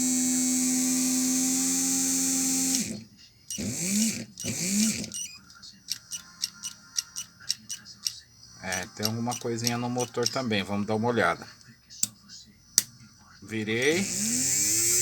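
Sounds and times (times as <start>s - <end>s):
small electric motor whining: 0.0s - 7.8s, 13.8s - 15.0s.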